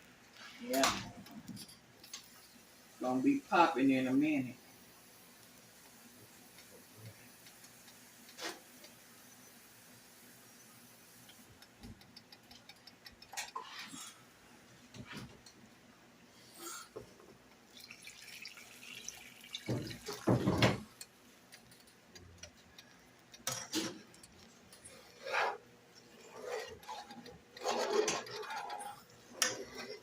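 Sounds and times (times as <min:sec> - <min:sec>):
utensil scraping skillet: 0:20.1 - 0:30.0.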